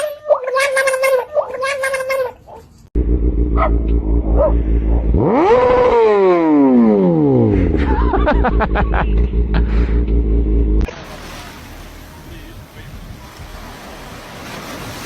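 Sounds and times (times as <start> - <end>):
engine revving: 2.9 - 12.7
steady low rumble: 2.9 - 14.4.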